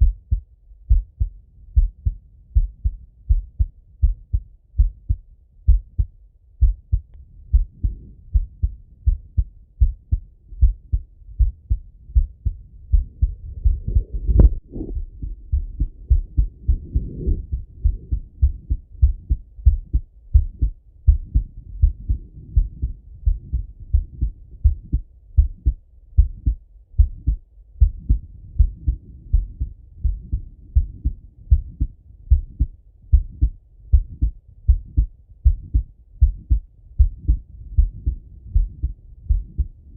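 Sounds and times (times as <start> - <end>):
heartbeat thumps: 0.0 - 39.9
soft breath sounds: 6.6 - 25.0.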